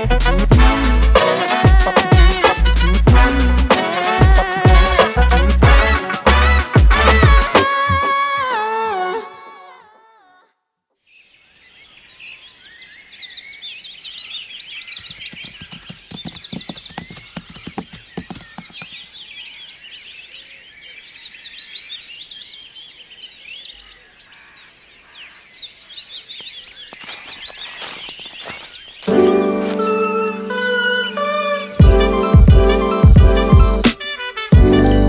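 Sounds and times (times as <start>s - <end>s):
small birds chirping: 11.1s - 31.8s.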